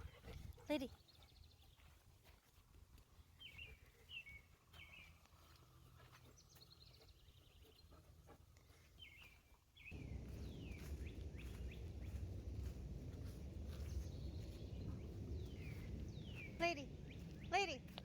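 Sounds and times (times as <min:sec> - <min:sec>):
bird chirping: 0:03.4 - 0:08.1, 0:08.7 - 0:18.0
low rumble: 0:10.0 - 0:18.0.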